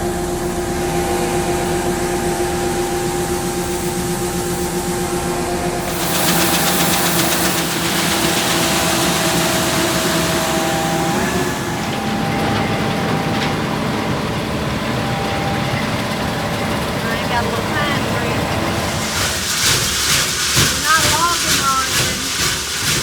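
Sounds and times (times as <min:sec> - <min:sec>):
machinery hums: 0:00.0 - 0:23.0
farm machinery hiss: 0:05.8 - 0:23.0.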